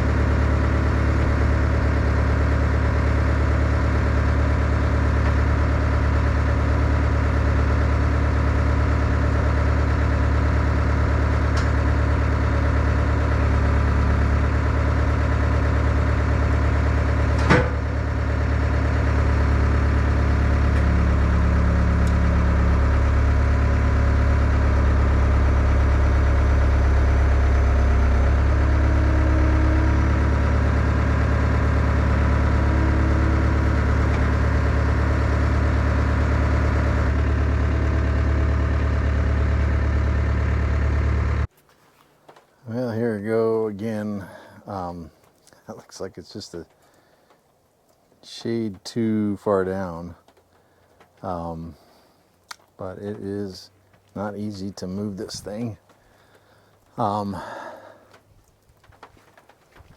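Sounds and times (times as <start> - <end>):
skid steer engine running: 0.0 - 47.5, 48.2 - 59.9
sharp clunk: 17.4 - 17.8.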